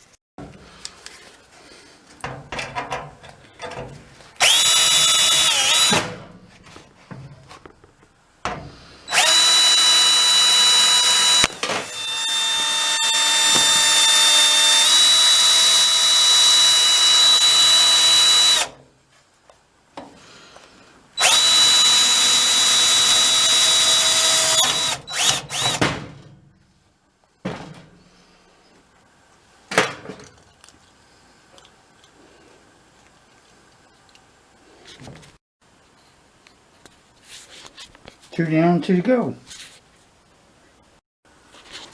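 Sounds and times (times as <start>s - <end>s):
drill clicks: 4.4s - 6.0s, 9.1s - 18.8s, 21.2s - 25.8s
power drill running: 4.4s - 6.0s, 9.1s - 18.7s, 21.2s - 25.8s.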